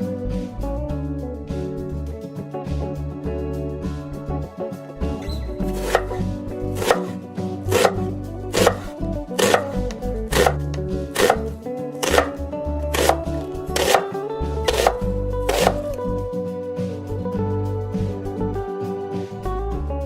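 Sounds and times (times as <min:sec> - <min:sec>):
music with sustained chords: 0:00.0 - 0:20.0
sharp knocking: 0:06.8 - 0:08.0, 0:08.6 - 0:12.4, 0:13.8 - 0:14.0, 0:14.7 - 0:15.9.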